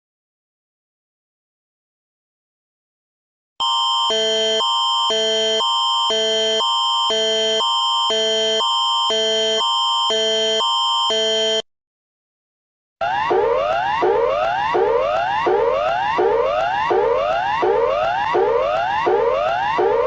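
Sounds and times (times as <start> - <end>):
electronic alarm tones: 3.6 - 11.7.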